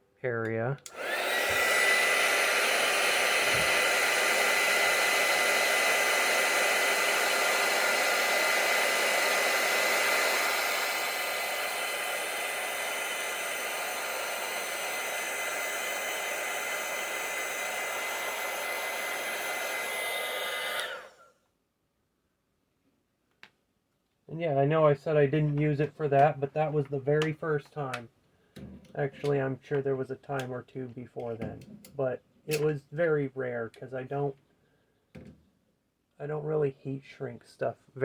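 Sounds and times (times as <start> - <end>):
hot-air blower fan whine: 0.9 - 21.3.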